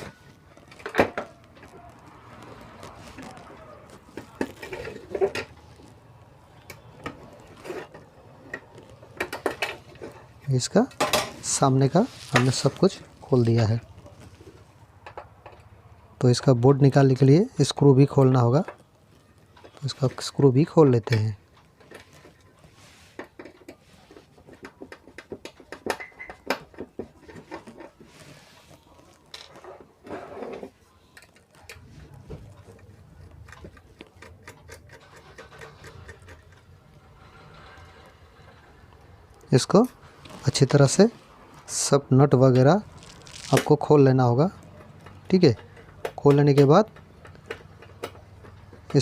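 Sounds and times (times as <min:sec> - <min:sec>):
screwdriver scraping: 0:32.7 - 0:38.7.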